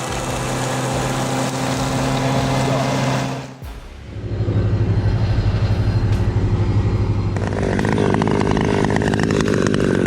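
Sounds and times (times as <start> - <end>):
chainsaw engine running: 0.0 - 3.5, 6.0 - 10.0.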